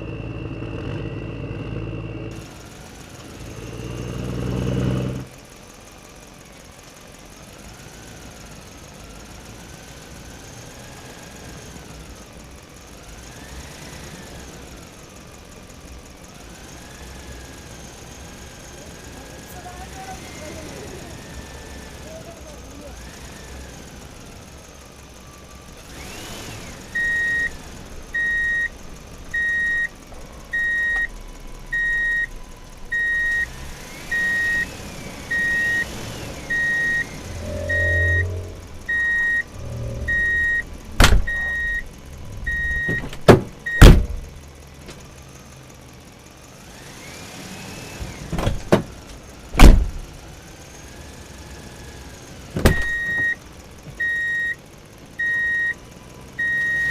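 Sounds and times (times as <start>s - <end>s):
toy reversing alarm beeping: 26.9s - 29.9s, 30.5s - 40.7s, 41.3s - 43.0s, 52.7s - 53.4s, 54.0s - 54.6s, 55.2s - 55.8s, 56.4s - 56.9s.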